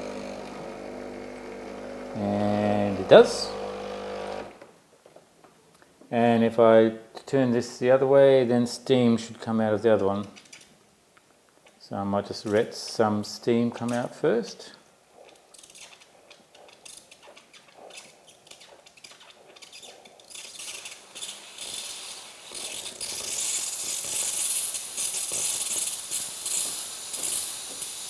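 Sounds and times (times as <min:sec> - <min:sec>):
steam wand hissing and sputtering: 0:15.2 - 0:28.0.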